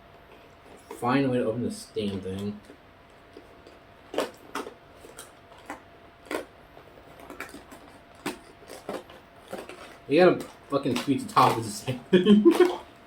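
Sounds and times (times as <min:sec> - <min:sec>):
plastic snack bag crackling: 0:03.4 - 0:12.8.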